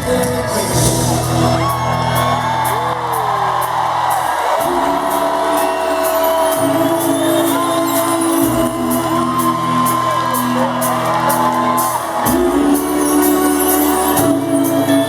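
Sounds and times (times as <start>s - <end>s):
crowd whooping: 0.0s - 15.0s
live rock band playing: 0.0s - 15.0s.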